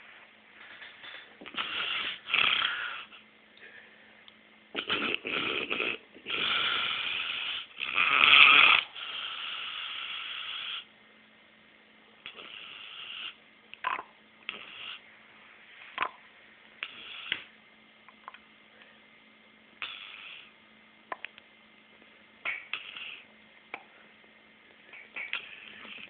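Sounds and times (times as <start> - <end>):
man snoring loudly: 4.8 - 10.8.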